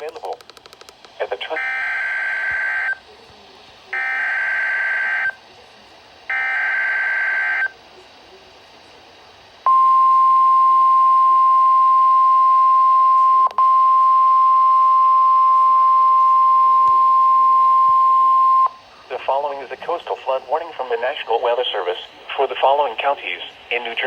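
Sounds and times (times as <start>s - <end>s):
steady warning alarm tone: 1.5s - 3.0s, 3.9s - 5.4s, 6.3s - 7.7s.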